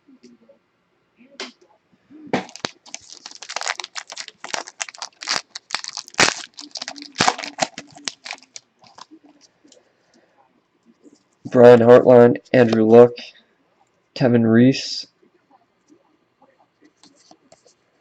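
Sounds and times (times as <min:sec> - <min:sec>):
foil wrapper tearing and crinkling: 0:02.4 - 0:09.1.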